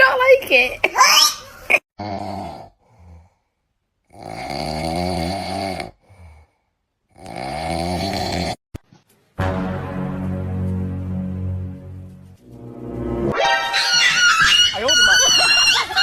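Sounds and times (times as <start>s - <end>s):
pet snoring: 2.0s - 3.4s, 4.1s - 6.4s, 7.1s - 8.6s.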